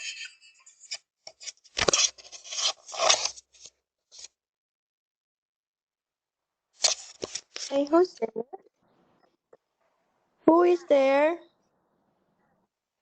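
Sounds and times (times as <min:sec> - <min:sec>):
scratchy rubbing and scraping: 0:00.0 - 0:04.3, 0:06.8 - 0:08.1.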